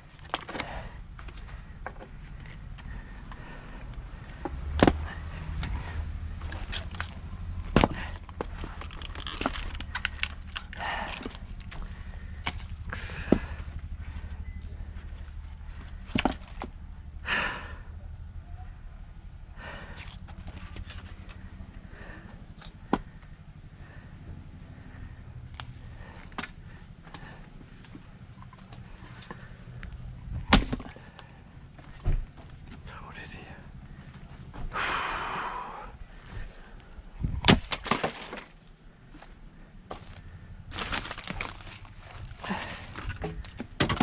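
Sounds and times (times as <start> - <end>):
low hum: 0.0 - 44.0
low steady rumble: 0.0 - 44.0
heavy exhaled breaths: 0.5 - 7.0, 10.6 - 15.0, 19.5 - 32.1, 32.8 - 37.3, 41.3 - 43.7
wood splitting knocks: 4.4 - 5.7, 7.7 - 11.8, 30.4 - 31.1, 37.4 - 38.6, 42.9 - 44.0.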